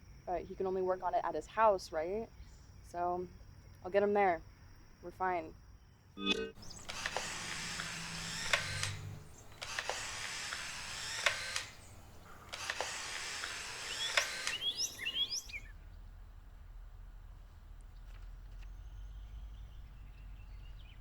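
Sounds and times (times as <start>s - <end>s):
bird chirps: 6.2s - 15.8s
camera shutter click: 6.4s - 15.5s
camera motor whirring: 6.6s - 15.6s.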